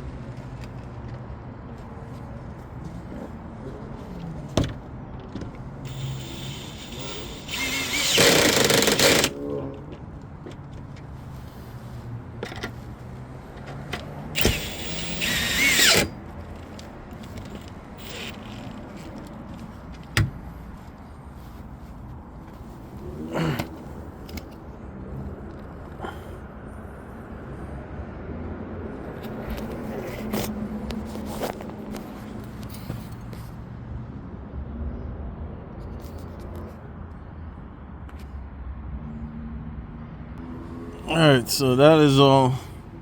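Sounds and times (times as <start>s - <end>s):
power drill driving fasteners: 5.9s - 9.4s, 14.4s - 19.4s
sharp clicks: 5.9s - 9.4s, 14.4s - 19.2s.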